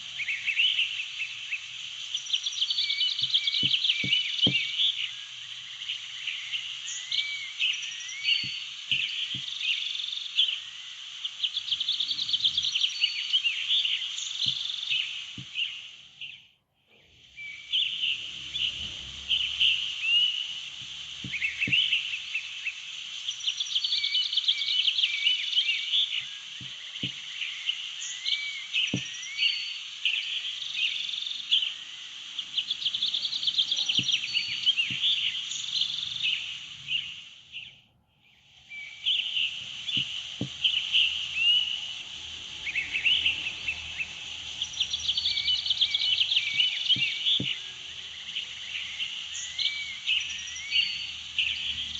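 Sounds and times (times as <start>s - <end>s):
birds chirping and whistling: 0.0s - 51.9s
high insect-like hiss: 0.0s - 51.9s.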